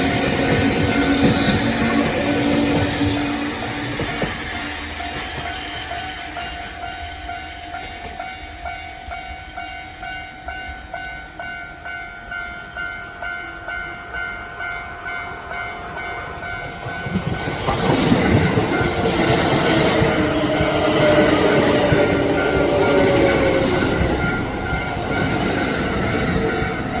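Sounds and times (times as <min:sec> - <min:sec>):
train wheels clacking on rail joints: 0:00.0 - 0:07.0, 0:16.6 - 0:27.0
electric train passing: 0:00.0 - 0:27.0.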